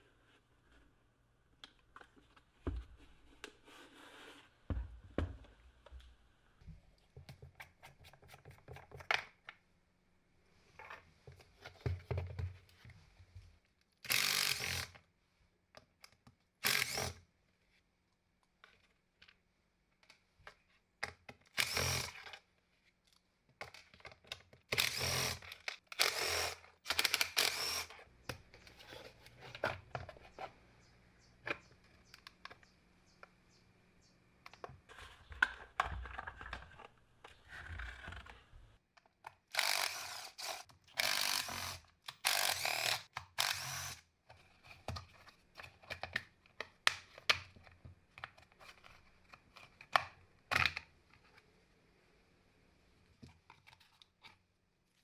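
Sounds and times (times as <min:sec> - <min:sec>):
power drill bursts: 0:21.6 - 0:22.1, 0:24.8 - 0:25.4, 0:26.0 - 0:27.9, 0:39.5 - 0:44.0
clicks and handling noises: 0:22.2 - 0:30.6, 0:31.2 - 0:33.4, 0:34.4 - 0:43.6, 0:44.2 - 0:51.6, 0:53.2 - 0:55.0.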